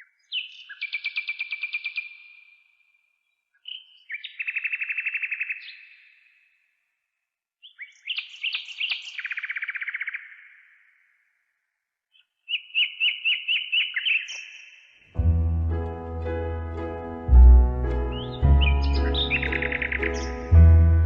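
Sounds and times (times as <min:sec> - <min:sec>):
songbird singing: 0:03.6 - 0:06.1, 0:12.2 - 0:21.0.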